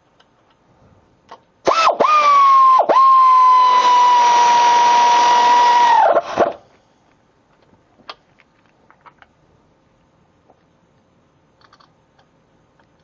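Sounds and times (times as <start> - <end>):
power drill motor whine: 1.7 - 6.6.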